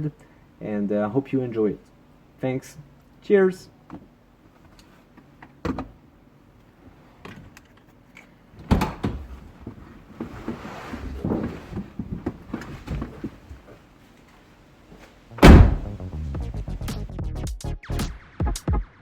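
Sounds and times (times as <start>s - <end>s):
rustling handling noise: 9.3s - 15.3s
clunks and knocks: 15.4s - 15.9s
heavy thud: 15.4s - 16.0s.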